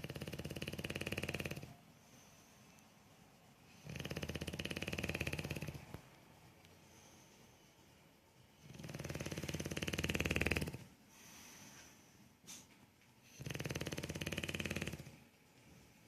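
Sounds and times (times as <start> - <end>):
dog snoring: 0.0 - 2.3, 3.6 - 6.0, 8.6 - 11.3, 13.2 - 15.3
dog breathing: 3.6 - 6.0, 8.5 - 15.9.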